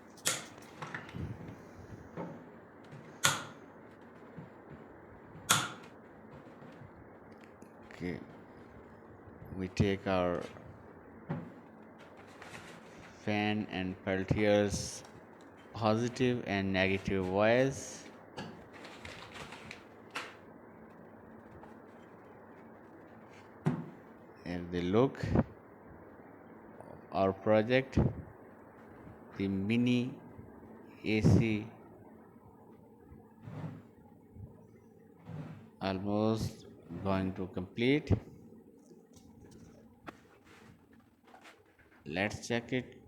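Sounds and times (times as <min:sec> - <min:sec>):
clicks and rustles of wires: 0:00.0 - 0:09.6, 0:10.3 - 0:13.4, 0:14.0 - 0:24.4, 0:38.1 - 0:42.1
faint steady hiss: 0:26.4 - 0:35.1.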